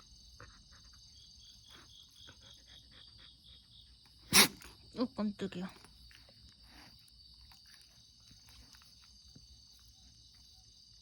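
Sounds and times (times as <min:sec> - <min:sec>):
crickets trilling: 0:00.0 - 0:11.0.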